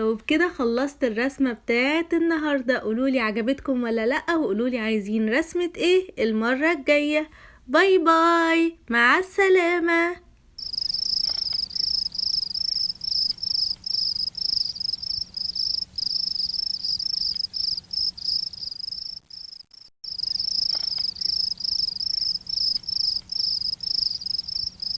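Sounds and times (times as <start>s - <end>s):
insect chirping trill: 10.6s - 24.9s.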